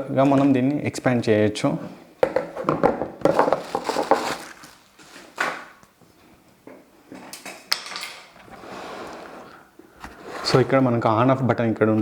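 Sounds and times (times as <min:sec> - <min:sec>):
plastic pipes knocking and clicking: 0:02.2 - 0:04.4.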